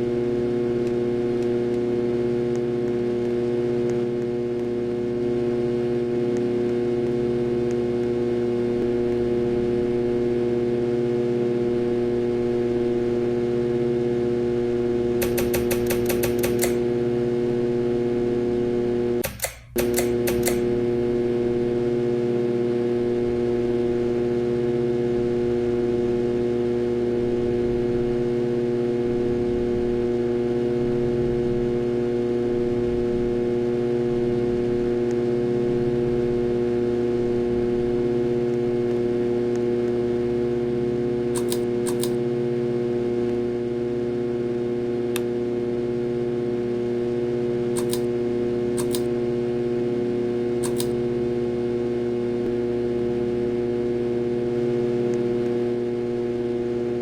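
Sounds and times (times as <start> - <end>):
ceiling fan motor humming: 0.0 - 57.0
sharp clicks: 15.2 - 16.8, 19.2 - 20.7, 41.3 - 42.2, 47.8 - 48.1, 48.8 - 49.1, 50.6 - 51.0.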